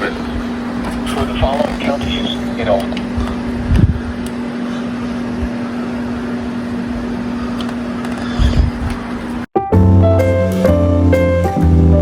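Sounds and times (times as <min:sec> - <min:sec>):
radio hiss: 0:00.0 - 0:09.4
constant low hum: 0:00.0 - 0:09.5
music: 0:09.6 - 0:12.0.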